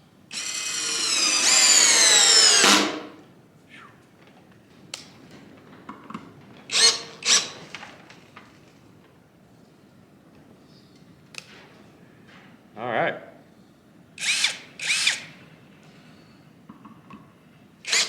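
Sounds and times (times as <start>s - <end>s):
cordless drill motor whining: 0.3s - 3.0s, 14.2s - 15.2s.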